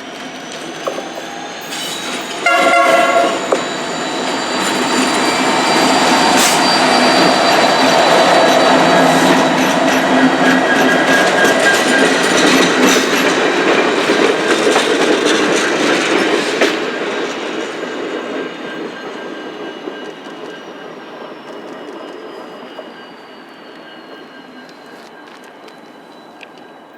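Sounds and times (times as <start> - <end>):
high wheel squeal: 0.0 - 26.9
train wheels clacking over rail joints: 4.6 - 20.6.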